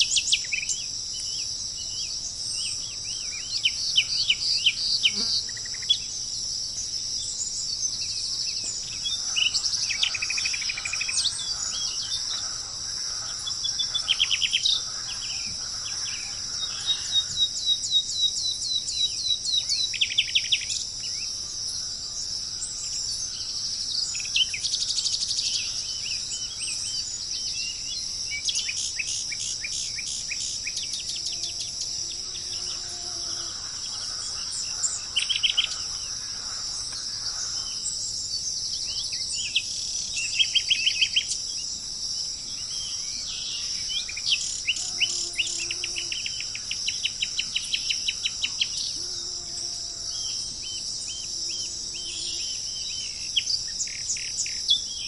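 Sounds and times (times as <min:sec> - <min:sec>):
crickets chirping: 0:00.0 - 0:55.0
birds calling: 0:01.8 - 0:18.1, 0:19.7 - 0:41.4.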